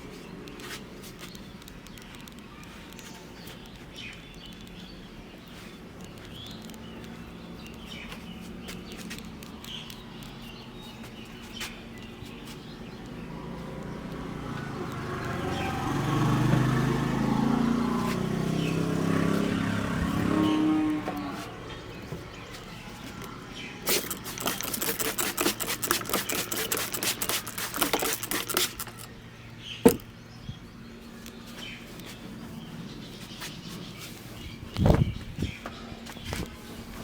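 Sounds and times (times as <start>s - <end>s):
vehicle engine passing by: 12.7s - 24.8s
rapid tapping strikes: 23.9s - 29.1s.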